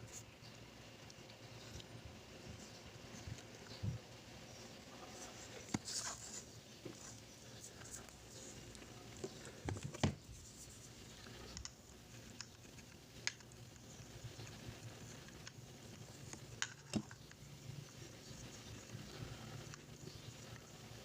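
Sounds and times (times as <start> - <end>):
small plastic parts clicking and tapping: 11.5 - 15.6, 16.2 - 18.0.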